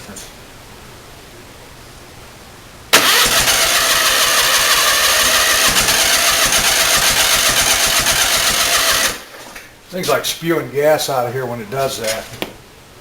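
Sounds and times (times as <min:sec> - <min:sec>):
engine cranking on starter: 0:02.9 - 0:09.5.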